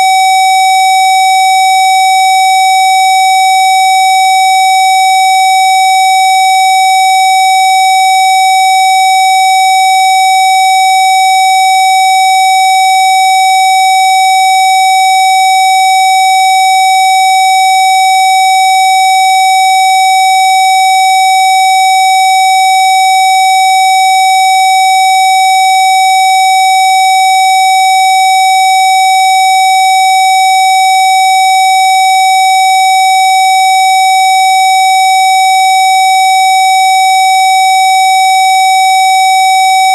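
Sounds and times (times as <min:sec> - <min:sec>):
electronic test tone: 0:00.0 - 0:00.5.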